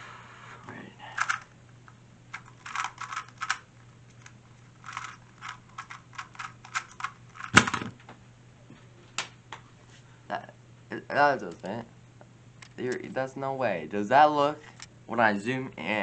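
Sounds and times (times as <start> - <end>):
puzzle cube clicking: 2.3 - 3.6, 4.2 - 7.8
loud thump: 7.6 - 8.0.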